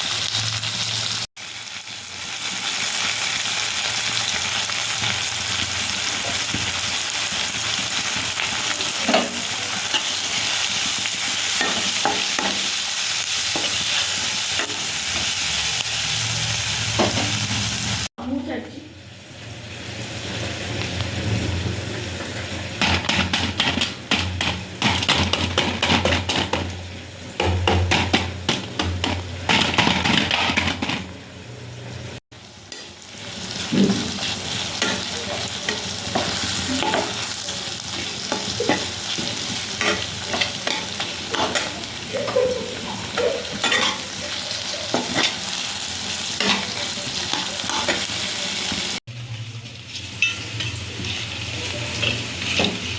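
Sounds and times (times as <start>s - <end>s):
food sizzling in hot oil: 0.0s - 52.9s
spatula scraping pan: 22.1s - 26.7s, 27.7s - 31.2s, 33.6s - 48.4s.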